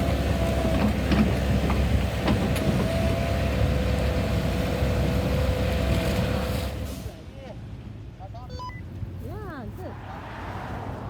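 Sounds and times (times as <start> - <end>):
diesel engine rumble: 0.0 - 7.3.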